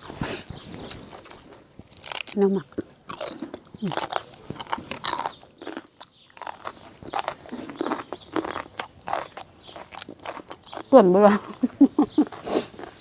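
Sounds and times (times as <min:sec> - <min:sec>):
person chewing and crunching: 0:00.0 - 0:13.0
mouth sounds: 0:03.4 - 0:04.6.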